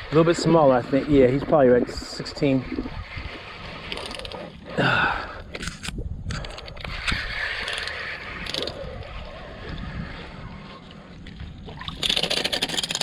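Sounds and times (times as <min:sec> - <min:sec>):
fish thrashing: 0:06.5 - 0:13.0.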